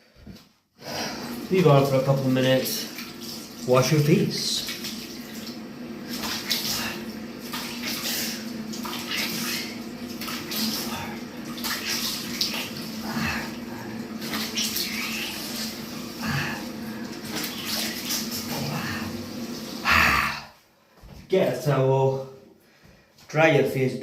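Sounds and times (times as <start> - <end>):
tap water running: 0.0 - 20.5
steady low hum: 0.8 - 20.6
hands splashing water: 4.6 - 18.6.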